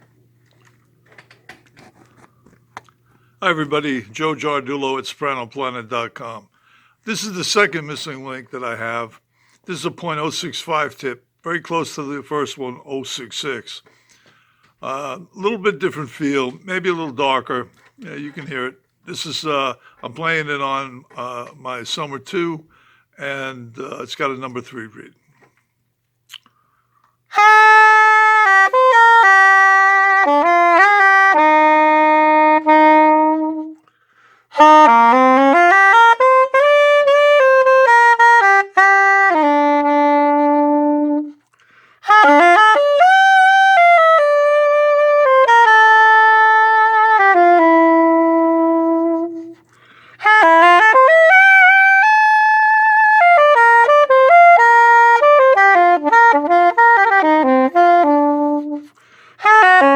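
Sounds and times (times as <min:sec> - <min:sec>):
player breathing: 0:06.5 - 0:07.0, 0:13.8 - 0:14.8, 0:22.7 - 0:23.1, 0:33.8 - 0:34.5, 0:41.4 - 0:42.1, 0:49.4 - 0:50.2, 0:58.8 - 0:59.4
soprano saxophone melody: 0:14.8 - 0:20.2, 0:27.3 - 0:59.9.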